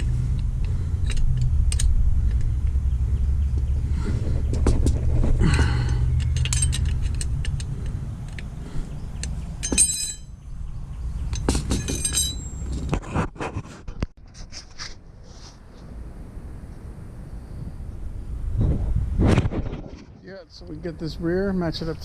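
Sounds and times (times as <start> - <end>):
low rumble: 0.0 - 11.4
metal tools clanking: 4.0 - 10.4, 11.2 - 12.9.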